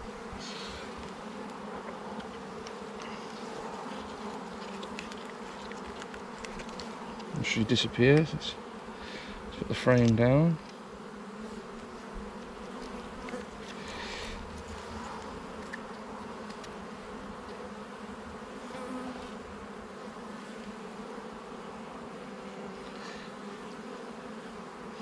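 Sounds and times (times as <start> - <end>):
honeybees humming: 0.0 - 25.0.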